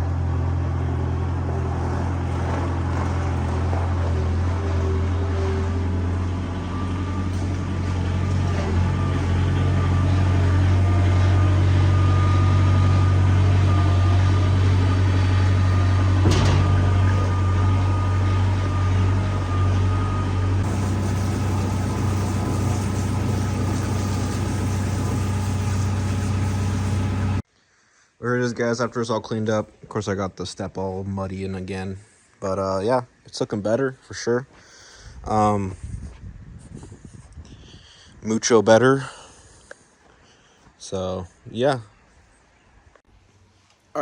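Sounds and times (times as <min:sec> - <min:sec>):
engine humming: 0:00.0 - 0:27.4.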